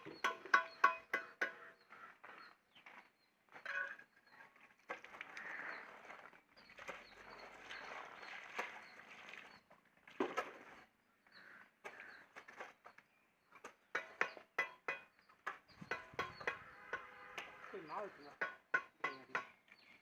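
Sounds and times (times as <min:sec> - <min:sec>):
scattered knocks: 0:00.0 - 0:01.6, 0:13.9 - 0:17.6, 0:18.3 - 0:19.6
sharp metallic taps: 0:00.0 - 0:01.6, 0:14.0 - 0:17.6, 0:18.3 - 0:19.6.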